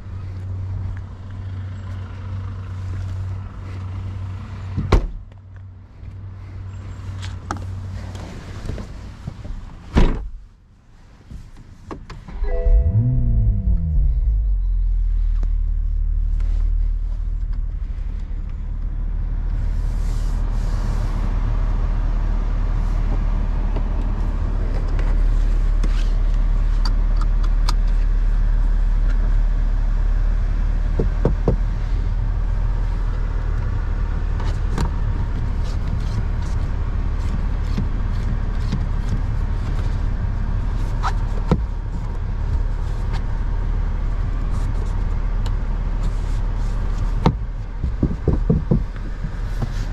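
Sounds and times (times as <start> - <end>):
car engine droning: 12.2 - 49.9.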